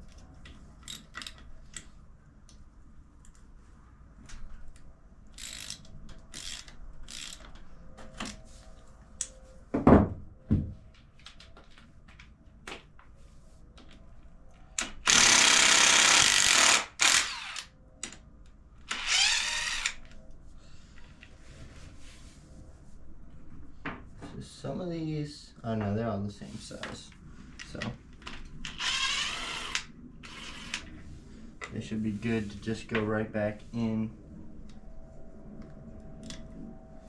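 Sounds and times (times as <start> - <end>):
hand ratchet clicking: 5.3 - 7.5
impact gun spinning: 14.8 - 17.7, 18.9 - 20.0, 28.7 - 30.9.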